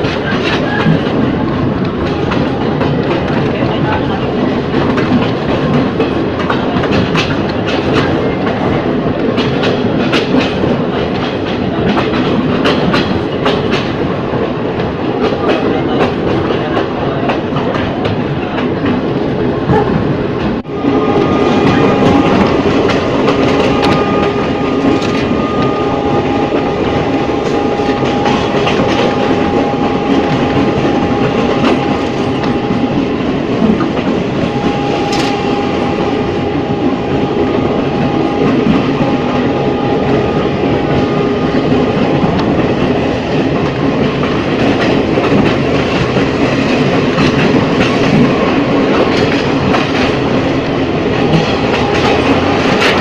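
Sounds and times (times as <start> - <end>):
wheels clicking over rail joints: 0.0 - 20.6
train wheel rumble: 0.0 - 53.0
train motor whine: 20.7 - 42.6.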